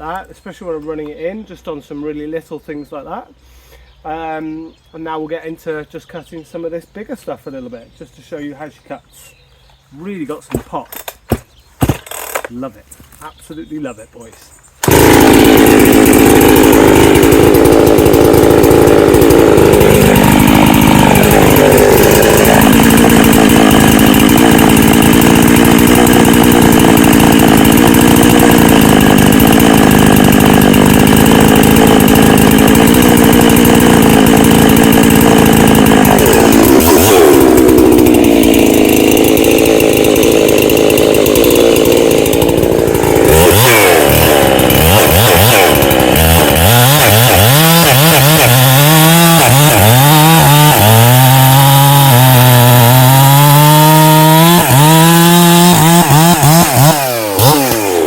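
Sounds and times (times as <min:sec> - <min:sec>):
chainsaw cutting at full throttle: 0:10.5 - 0:12.7, 0:14.8 - 0:58.0.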